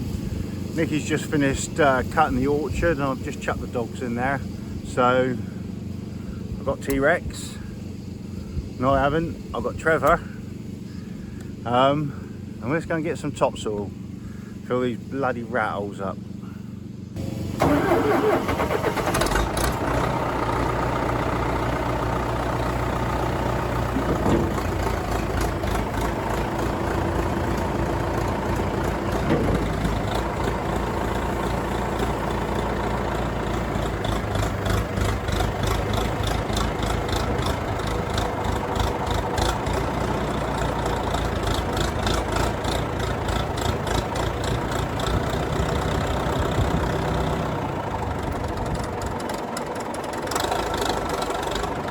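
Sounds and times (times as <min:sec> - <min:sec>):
small engine running: 0:13.8 - 0:51.9.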